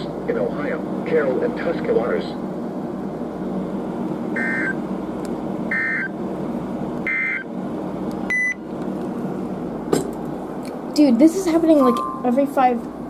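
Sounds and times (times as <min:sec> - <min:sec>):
steady background hum: 0:00.0 - 0:13.0
brief beep: 0:11.8 - 0:12.6.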